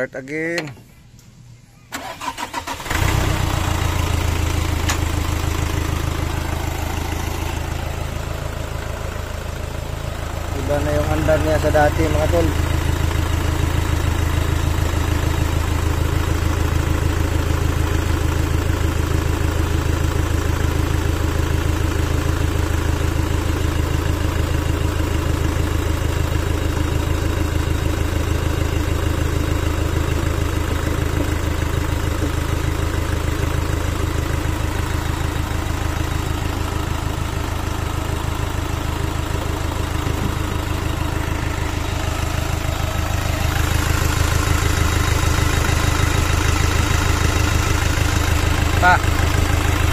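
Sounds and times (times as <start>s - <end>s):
diesel engine idling: 0.0s - 49.9s.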